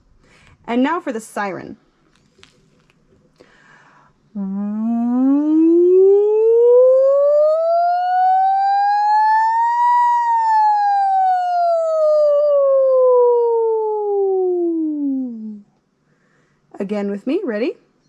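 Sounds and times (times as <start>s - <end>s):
person singing gliding note: 4.4s - 15.6s.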